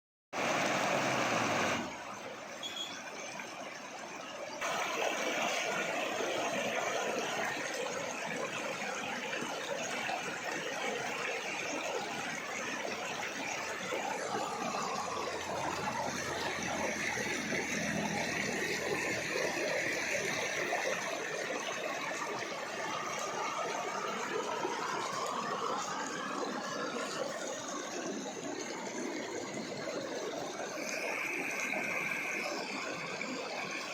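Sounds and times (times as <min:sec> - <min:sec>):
waterfall rushing: 0:00.4 - 0:01.9.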